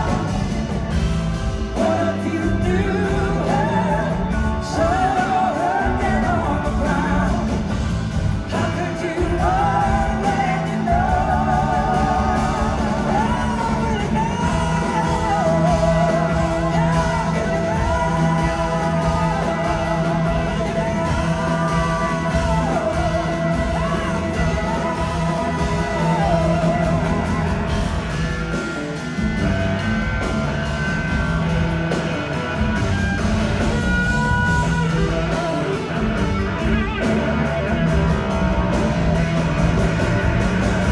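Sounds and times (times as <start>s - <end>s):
live rock band: 0.0s - 40.9s
person singing: 1.6s - 28.1s.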